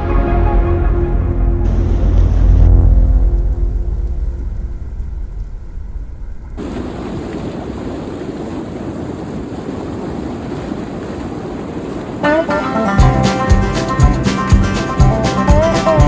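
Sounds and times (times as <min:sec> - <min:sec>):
music: 0:00.0 - 0:03.5, 0:12.2 - 0:16.0
water rushing over river rapids: 0:06.6 - 0:13.0.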